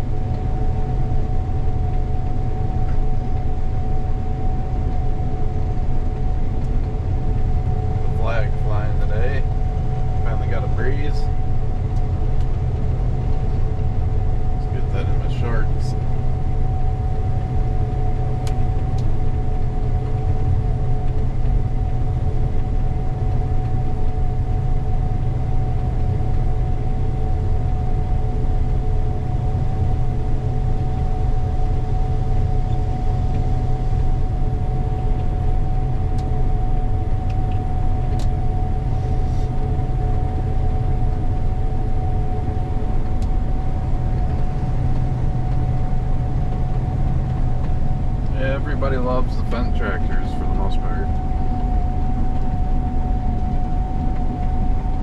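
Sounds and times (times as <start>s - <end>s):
diesel engine droning: 0.0s - 55.0s
steady whining tones: 0.0s - 55.0s.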